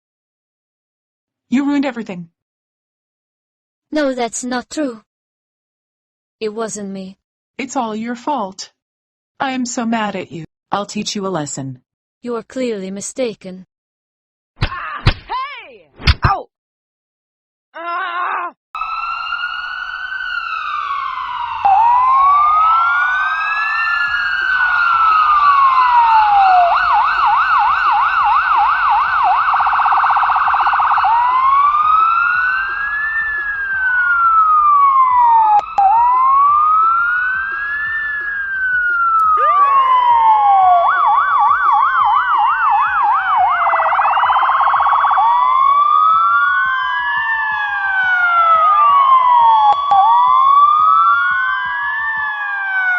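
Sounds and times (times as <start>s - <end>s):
ambulance siren wailing: 18.8s - 52.9s
overlapping siren sweeps: 18.8s - 52.9s.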